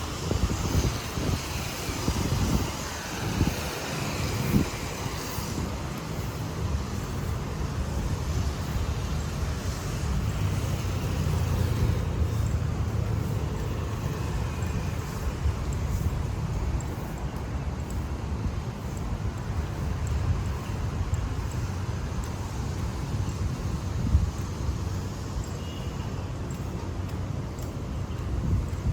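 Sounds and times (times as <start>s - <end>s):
road traffic rumble: 0.0s - 28.9s.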